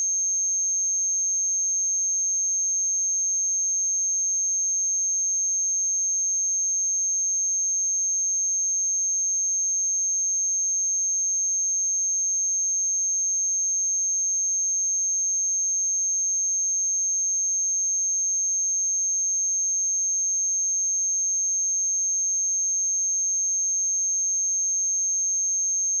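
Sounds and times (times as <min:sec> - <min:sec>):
high-pitched sine test tone: 0:10.8 - 0:26.0.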